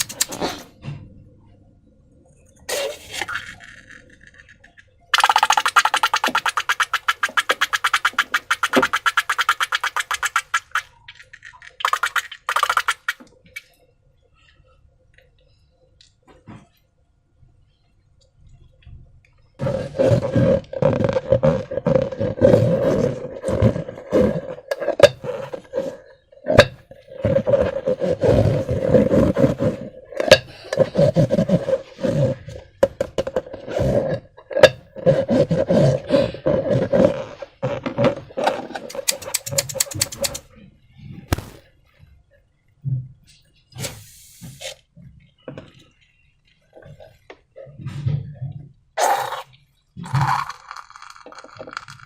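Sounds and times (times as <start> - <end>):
scrapes: 2.7 - 4.8
slime squelching: 5.1 - 13.2, 33.5 - 40.4.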